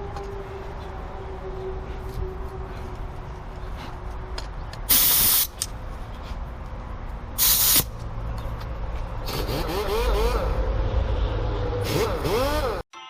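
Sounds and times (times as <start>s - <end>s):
compressed air blasts: 4.8s - 5.7s, 7.4s - 8.0s.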